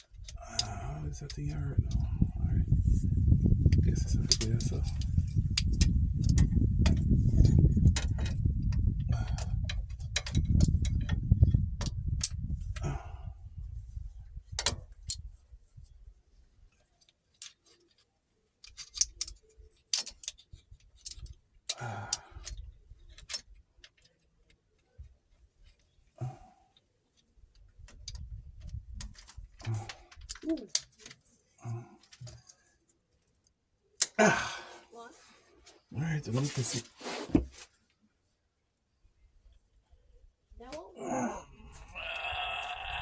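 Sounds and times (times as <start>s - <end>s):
brief scrape: 36.5s - 37.7s.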